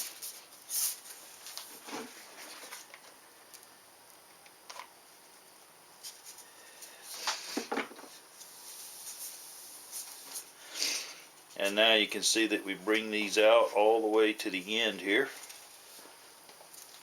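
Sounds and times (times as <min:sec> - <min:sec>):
rustling scrapes: 0:00.0 - 0:02.9, 0:08.3 - 0:12.0.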